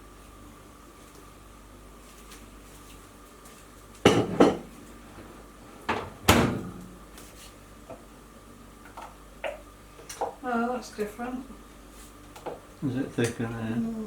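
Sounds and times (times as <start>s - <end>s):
microwave door clunking: 5.8s - 7.0s.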